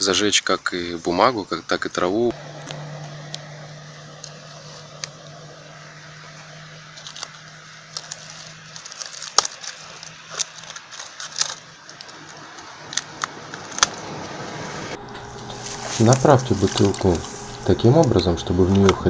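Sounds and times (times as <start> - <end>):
steady low hum: 2.2 - 9.2.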